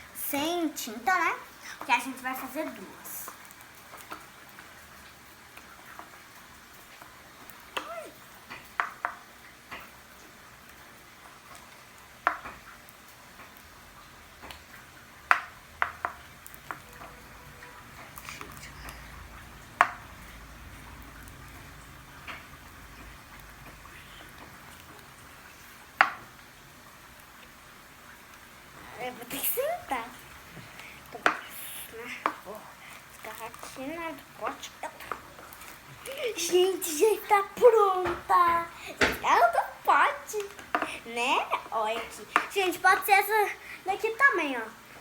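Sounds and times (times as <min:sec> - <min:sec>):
spoon stirring slime: 0:18.0 - 0:20.2, 0:29.1 - 0:37.6, 0:40.4 - 0:43.6.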